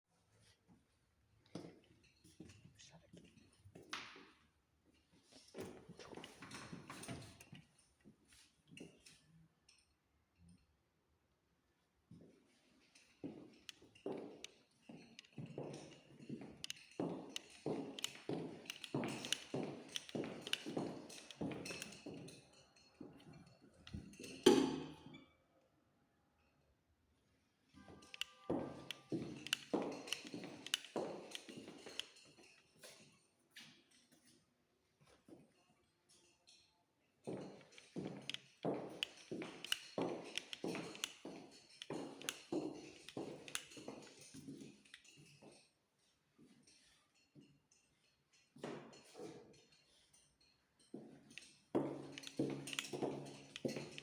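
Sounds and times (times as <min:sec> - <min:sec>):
footsteps on hard floor: 0:13.2 - 0:22.3, 0:28.1 - 0:32.0, 0:37.3 - 0:44.6, 0:51.8 - 0:54.0.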